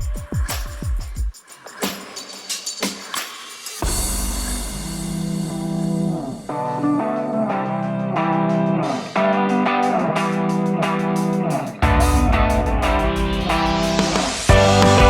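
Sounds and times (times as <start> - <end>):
guitar background music: 6.1 - 15.0.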